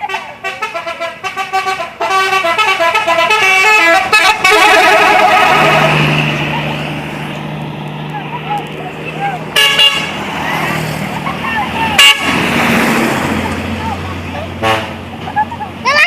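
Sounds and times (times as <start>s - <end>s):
bus musical horn: 0.0s - 6.5s, 9.6s - 10.2s, 12.0s - 12.4s, 14.6s - 15.0s.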